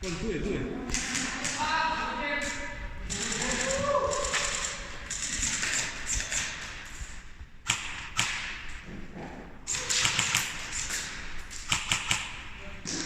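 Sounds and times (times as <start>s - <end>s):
airsoft gun shots: 9.7s - 11.1s.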